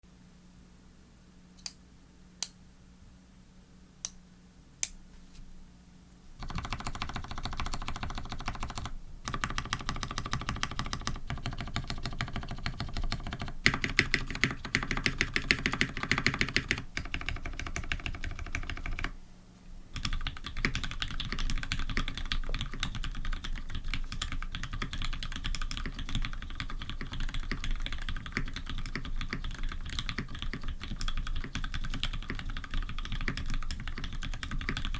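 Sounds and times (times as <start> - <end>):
mechanical keyboard typing: 6.4 - 19.1, 20.0 - 34.9.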